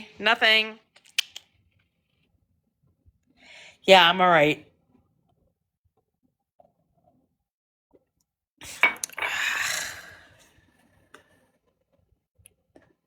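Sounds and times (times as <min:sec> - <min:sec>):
person breathing out: 0:09.1 - 0:10.4.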